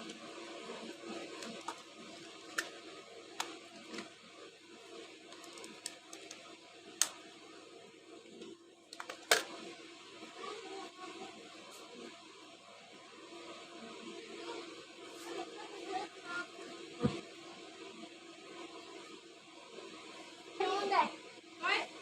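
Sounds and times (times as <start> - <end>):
small parts clicking and tapping: 5.3 - 6.4.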